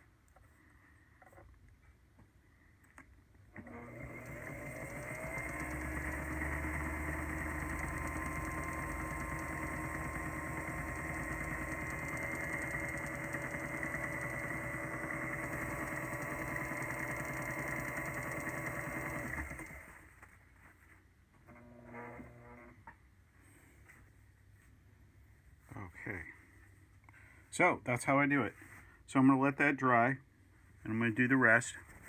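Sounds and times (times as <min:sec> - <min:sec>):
lathe electric motor running: 0:03.6 - 0:20.0.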